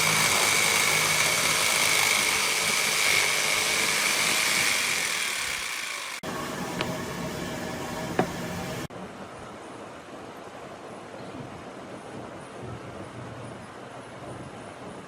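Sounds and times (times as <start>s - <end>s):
machine whining: 0.0s - 8.9s.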